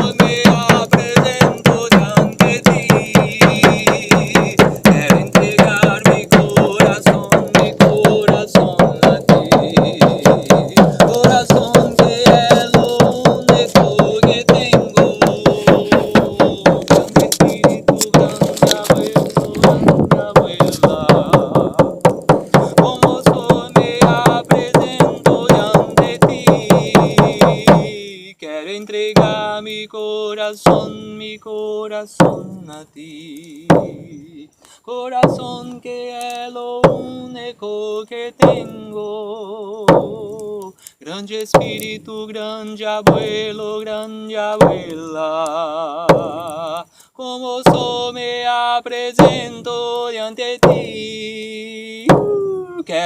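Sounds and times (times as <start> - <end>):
drum beaten in steady rhythm: 0.0 - 27.9, 52.1 - 52.5
voice chanting a song: 0.0 - 28.4.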